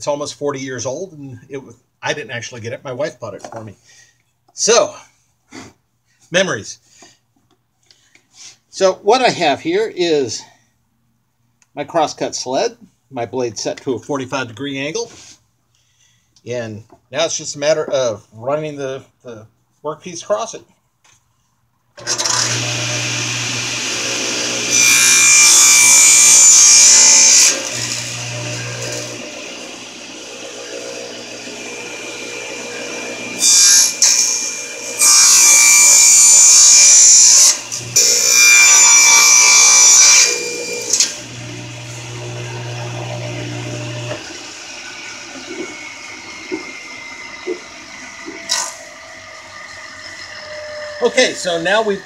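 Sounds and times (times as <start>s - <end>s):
saw blade cutting wood: 22.0s - 52.0s
table saw motor hum: 22.0s - 52.0s.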